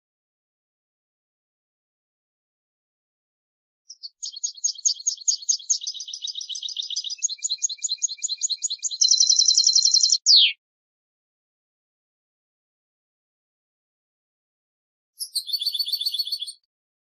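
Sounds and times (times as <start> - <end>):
finch singing chirps and trill: 3.9 - 10.6, 15.2 - 16.6.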